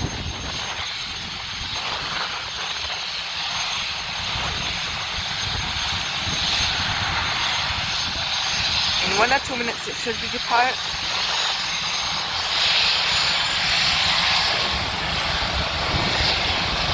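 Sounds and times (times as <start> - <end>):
helicopter engines and rotors: 0.0 - 16.9
high turbine whine: 0.0 - 16.9.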